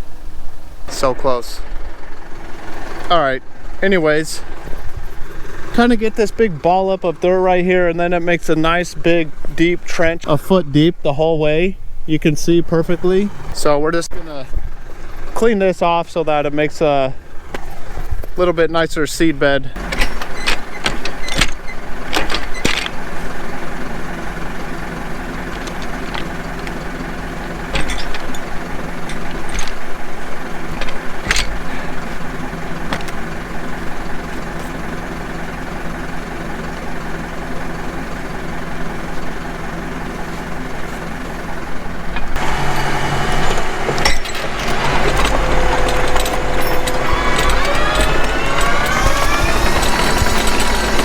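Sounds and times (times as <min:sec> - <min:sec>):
tractor diesel engine running: 0:00.0 - 0:51.0
sharp clicks and knocks: 0:19.8 - 0:23.0, 0:25.5 - 0:30.0, 0:30.6 - 0:31.7, 0:32.9 - 0:33.2, 0:42.1 - 0:51.0.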